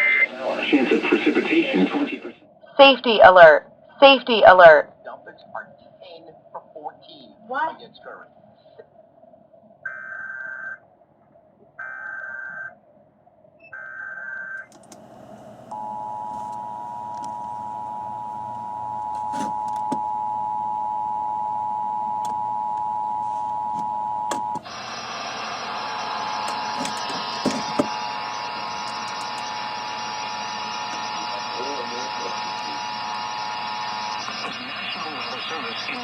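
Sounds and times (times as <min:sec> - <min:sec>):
loud static hiss: 0:00.0 - 0:02.3, 0:24.3 - 0:36.0
warbling digital data tones: 0:24.6 - 0:36.0.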